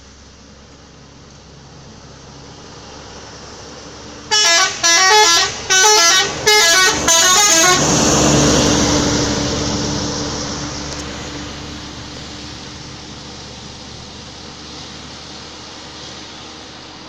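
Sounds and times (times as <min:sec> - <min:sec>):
bus engine and road noise: 0:00.0 - 0:17.0
musical air horn blasts: 0:04.3 - 0:08.3.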